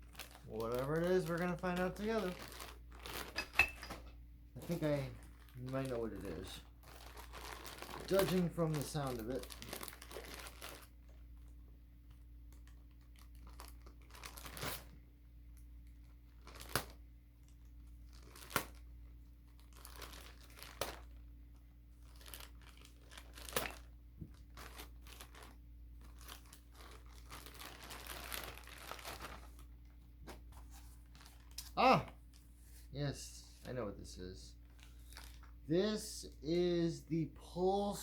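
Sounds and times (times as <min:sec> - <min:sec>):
packaging tearing and crinkling: 0:00.0 - 0:03.4, 0:04.6 - 0:11.2, 0:12.5 - 0:14.9, 0:16.3 - 0:18.9, 0:19.5 - 0:21.3, 0:22.0 - 0:29.8.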